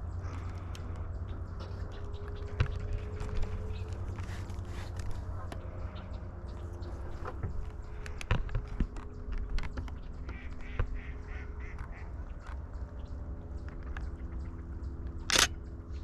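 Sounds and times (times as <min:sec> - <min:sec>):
ducks quacking: 0:10.2 - 0:12.3
sharp clicks: 0:14.9 - 0:15.8.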